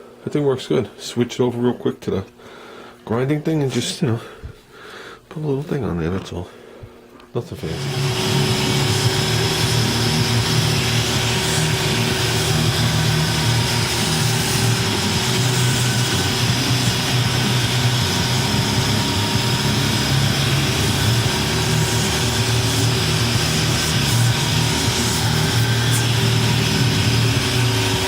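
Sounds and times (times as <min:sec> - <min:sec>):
angle grinder grinding steel: 0:07.6 - 0:28.0.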